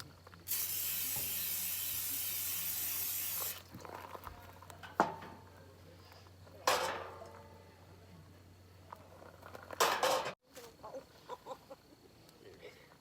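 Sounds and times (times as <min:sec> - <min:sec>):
aerosol spray can hissing: 0:00.5 - 0:03.7.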